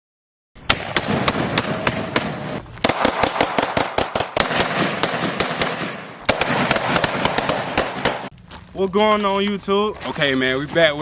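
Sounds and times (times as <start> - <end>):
rapid gunfire: 0.7 - 8.3.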